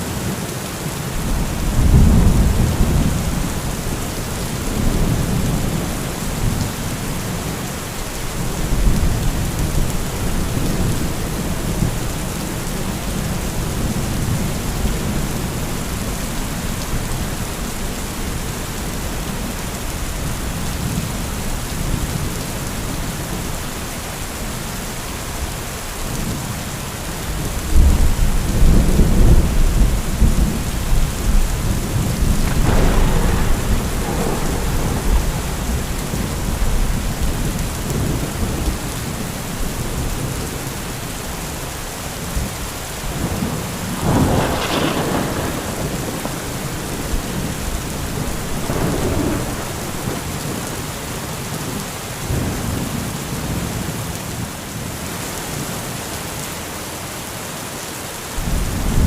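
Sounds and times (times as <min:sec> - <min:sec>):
heavy rain: 0:00.0 - 0:59.0
thunder rumbling and cracking: 0:01.2 - 0:23.5, 0:27.3 - 0:41.0, 0:42.2 - 0:51.6, 0:58.4 - 0:59.0.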